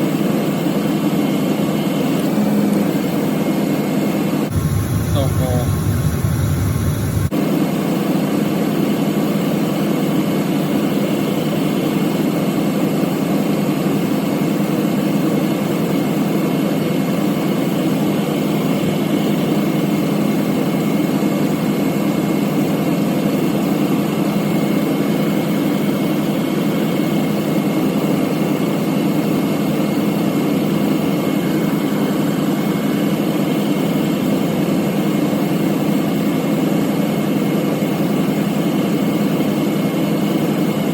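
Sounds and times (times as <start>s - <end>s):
air conditioning running: 1.2s - 7.3s
pickup truck idling: 4.5s - 7.3s.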